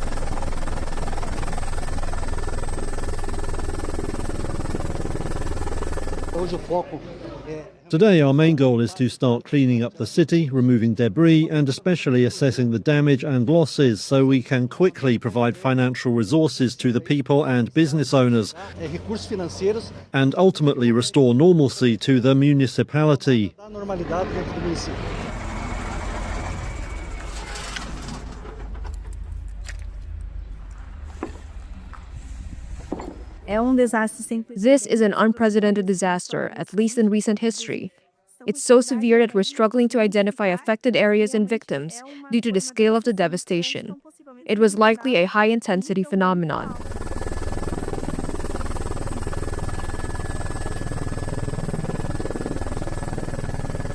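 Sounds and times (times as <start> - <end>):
heavy low rumble: 23.7 - 34.0
machine hum: 23.7 - 34.0, 46.7 - 53.9.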